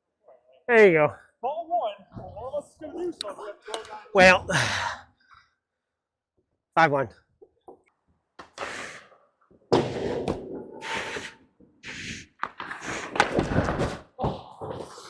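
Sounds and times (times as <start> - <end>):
skates scraping on ice: 9.8 - 15.0.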